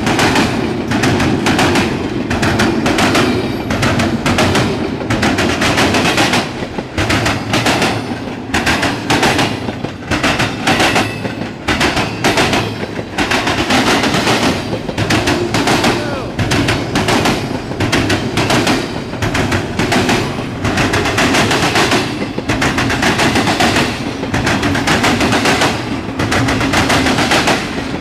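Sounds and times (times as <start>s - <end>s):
freight train cars rolling: 0.0s - 28.0s
wheel clicks over rail joints: 0.0s - 28.0s.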